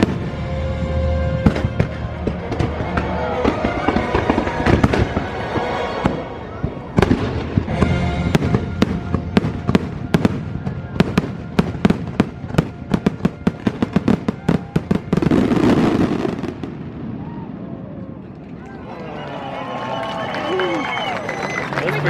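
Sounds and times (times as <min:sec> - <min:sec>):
show music: 0:00.0 - 0:15.7
fireworks bangs: 0:00.0 - 0:18.2.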